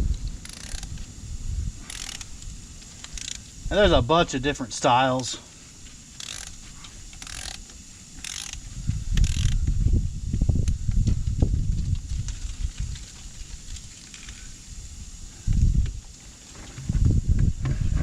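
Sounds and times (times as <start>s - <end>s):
ratchet clicking: 0.0s - 1.2s, 1.8s - 3.6s, 5.2s - 9.7s
low motor rumble: 0.0s - 18.0s.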